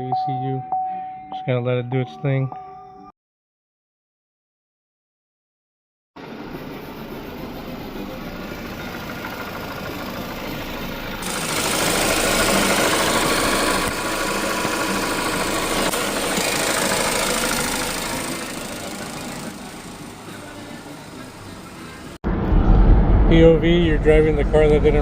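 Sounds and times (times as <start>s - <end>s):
car engine and road noise: 6.2s - 25.0s.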